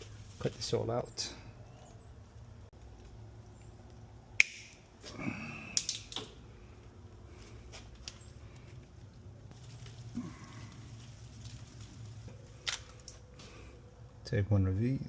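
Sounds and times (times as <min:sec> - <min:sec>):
wire clicking and rustling: 0:02.2 - 0:13.5.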